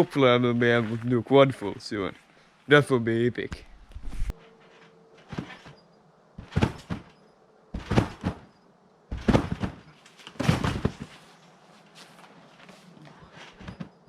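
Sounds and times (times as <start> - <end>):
trampoline bounces thumping: 4.7 - 5.8, 6.4 - 8.5, 9.1 - 11.2, 13.5 - 14.0.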